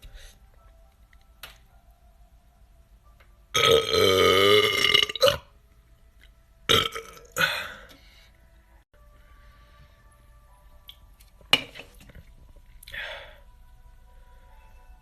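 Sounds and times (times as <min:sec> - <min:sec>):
man belching: 0:03.6 - 0:05.5, 0:06.7 - 0:07.4.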